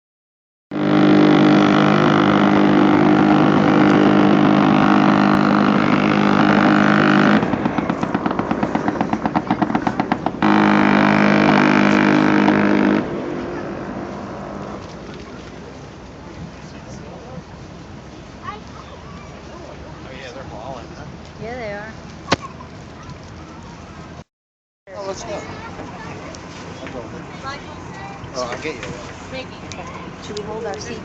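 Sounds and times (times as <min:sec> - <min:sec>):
mechanical drone with whine: 0:00.8 - 0:08.4.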